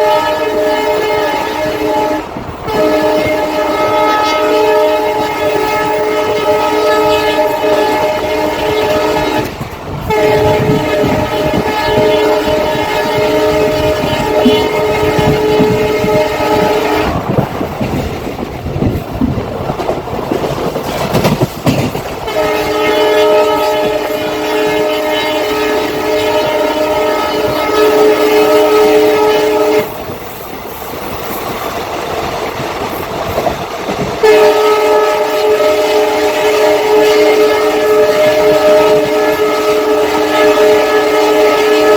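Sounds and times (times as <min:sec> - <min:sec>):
locomotive air horn blasts: 0:00.0 - 0:17.4, 0:22.2 - 0:30.1, 0:34.2 - 0:41.9
train wheels clattering over rails: 0:00.8 - 0:41.9.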